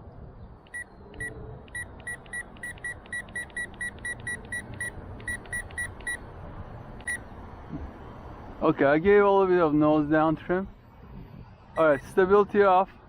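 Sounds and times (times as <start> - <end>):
transmitter beeping: 0.7 - 6.3, 6.9 - 7.3, 11.8 - 12.2.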